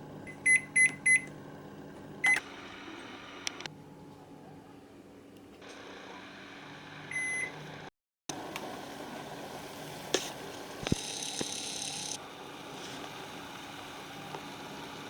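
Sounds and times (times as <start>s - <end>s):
electronic appliance beep: 0.3s - 1.3s, 2.2s - 2.5s, 7.1s - 7.6s, 10.9s - 12.2s.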